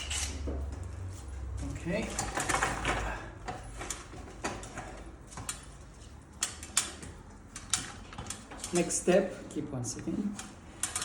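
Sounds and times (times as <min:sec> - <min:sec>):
small parts clattering: 0:01.6 - 0:09.2, 0:10.3 - 0:11.0.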